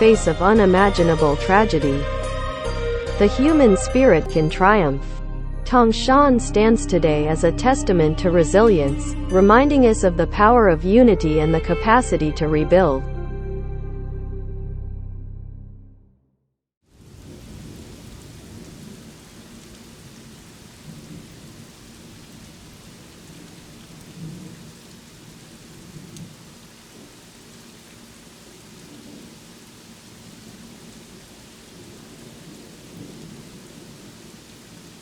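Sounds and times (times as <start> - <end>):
steady rain: 16.9 - 35.0
low rumbling thunder: 17.1 - 19.2, 24.1 - 24.8, 31.8 - 34.3.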